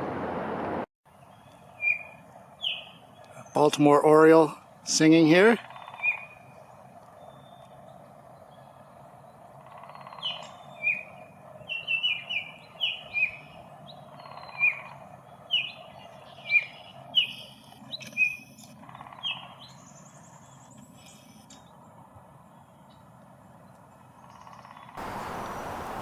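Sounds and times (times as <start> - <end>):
bird singing whistled notes: 1.3 - 3.6, 5.7 - 6.4, 7.2 - 7.8, 9.9 - 18.6.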